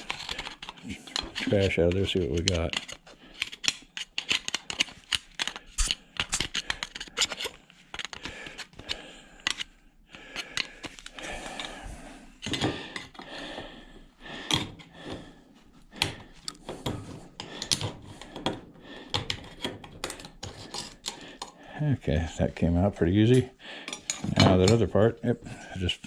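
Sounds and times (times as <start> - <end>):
metal parts clinking and tapping: 0.0 - 9.7.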